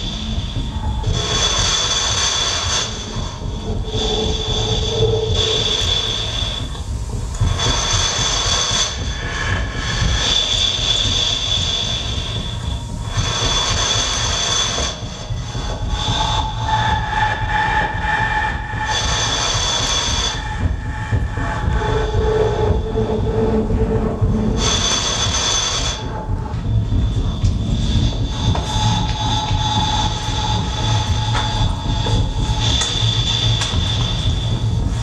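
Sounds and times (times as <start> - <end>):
low rumble: 0.0 - 35.0
lower electronic tones: 15.6 - 35.0.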